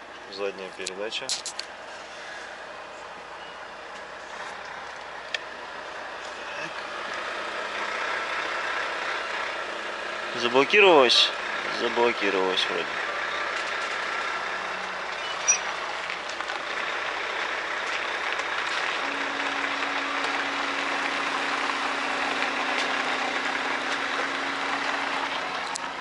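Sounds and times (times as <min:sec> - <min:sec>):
sharp click: 0:00.8 - 0:01.7
truck engine reversing: 0:01.8 - 0:26.0.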